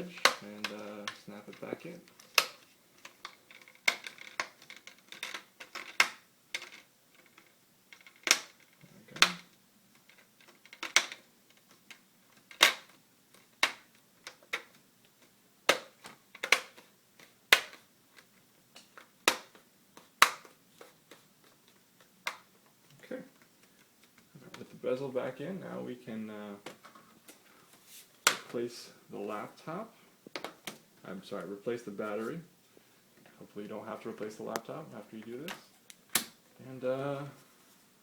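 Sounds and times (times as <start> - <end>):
handling noises: 0.0 - 6.0.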